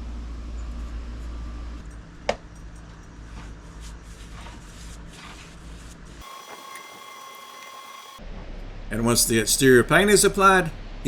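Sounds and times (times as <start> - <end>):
low background hum: 0.0 - 11.0
soft paintbrush strokes: 2.9 - 6.9.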